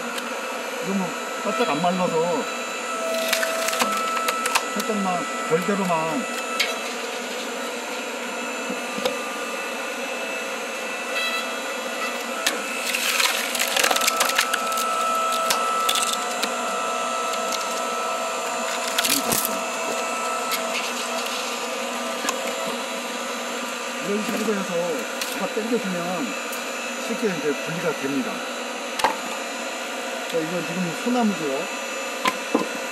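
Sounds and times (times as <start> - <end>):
log splitter humming: 0.0 - 27.7
wood cracking and splintering: 3.1 - 4.6, 12.5 - 15.6, 18.7 - 19.6.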